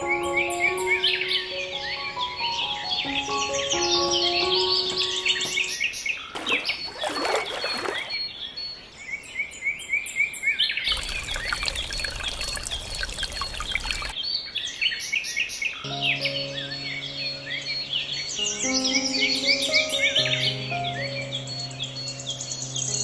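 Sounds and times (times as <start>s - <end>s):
background music: 0.0s - 5.8s, 15.9s - 23.0s
birds chirping: 0.0s - 23.0s
water pouring and splashing: 6.4s - 8.3s, 10.9s - 14.2s.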